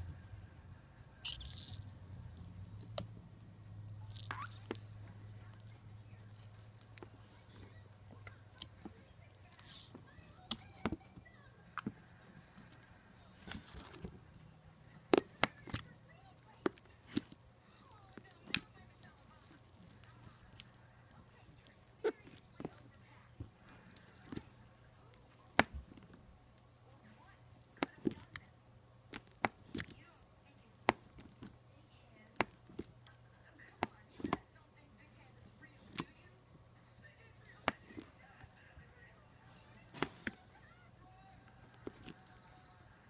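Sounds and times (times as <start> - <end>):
slime squeezed sticky pops: 3.9 - 5.6
slime squeezed by hand popping: 4.1 - 4.8.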